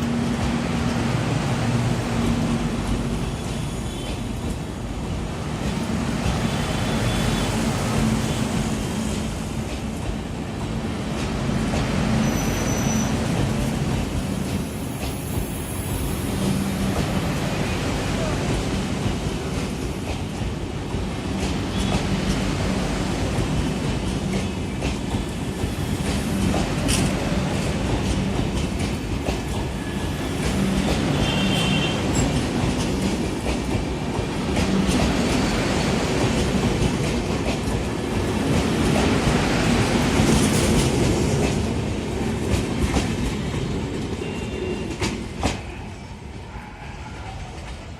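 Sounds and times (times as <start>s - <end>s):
train wheels clattering over rails: 0.0s - 45.8s
high wheel squeal: 12.2s - 13.4s.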